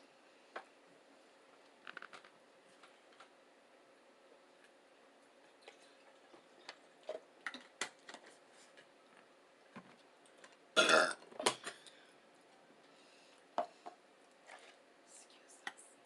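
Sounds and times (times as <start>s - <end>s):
person burping loudly: 10.8s - 11.2s.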